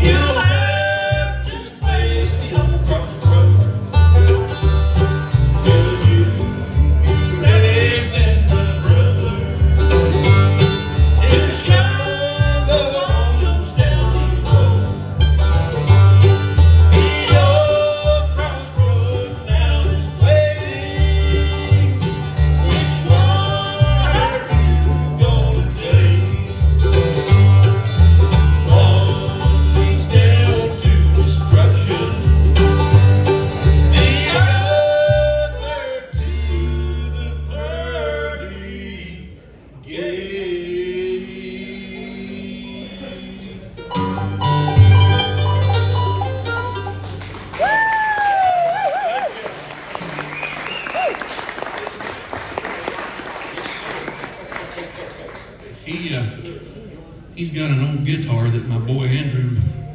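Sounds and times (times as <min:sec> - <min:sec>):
bass beat: 0:00.0 - 0:37.0, 0:44.0 - 0:47.2
banjo: 0:00.0 - 0:37.4, 0:43.0 - 0:47.6
bluegrass band playing: 0:00.0 - 0:39.0, 0:40.2 - 0:52.8.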